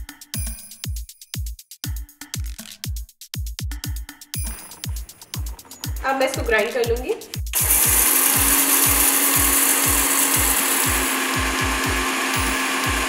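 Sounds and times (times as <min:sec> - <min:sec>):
background music beat: 0:00.0 - 0:13.0
mixer grinder motor hum: 0:07.5 - 0:13.0.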